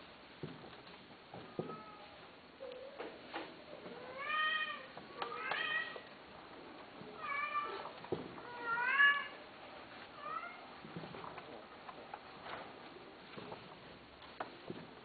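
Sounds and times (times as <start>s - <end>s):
cat meowing: 4.0s - 6.1s, 8.4s - 9.4s.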